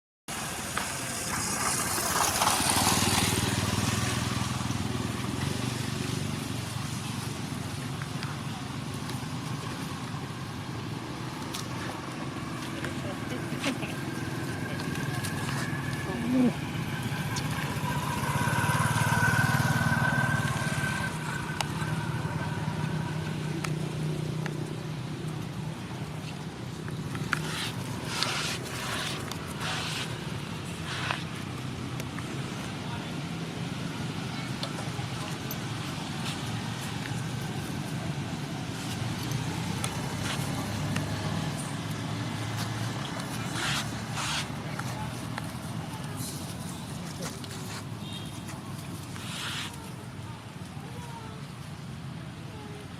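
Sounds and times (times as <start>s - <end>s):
engine pulsing hum: 11.9s - 25.7s.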